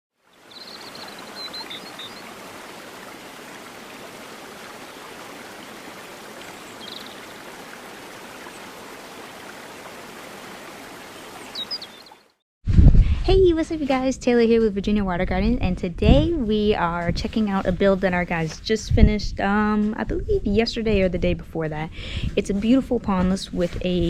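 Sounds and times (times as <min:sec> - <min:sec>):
high bird chirps: 0:00.3 - 0:02.3, 0:11.3 - 0:12.2
water splashing down waterfall: 0:00.5 - 0:12.1.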